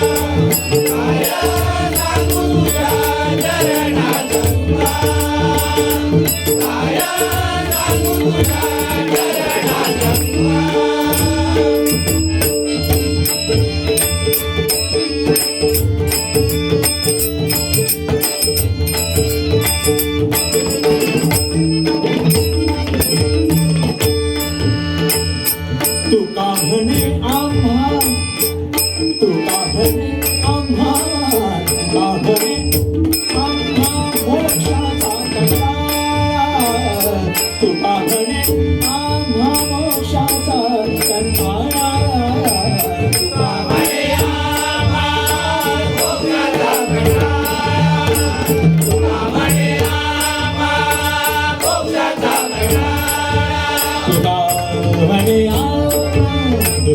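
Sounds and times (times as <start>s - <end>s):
drum accompaniment: 0.0s - 28.8s, 41.1s - 56.9s
devotional music: 0.0s - 56.9s.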